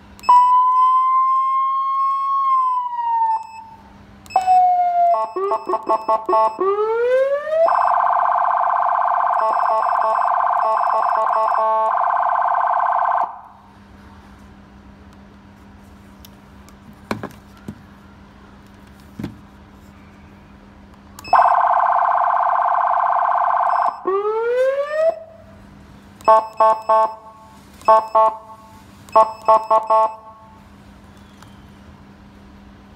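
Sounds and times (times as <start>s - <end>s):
siren chirps wail and horn tone: 0.3s - 13.6s, 21.3s - 25.6s, 26.3s - 30.6s.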